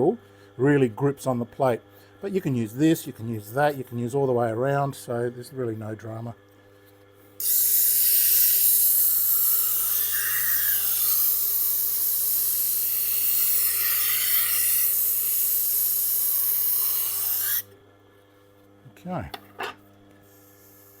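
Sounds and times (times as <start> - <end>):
knife grinding on wheel: 7.4 - 17.7.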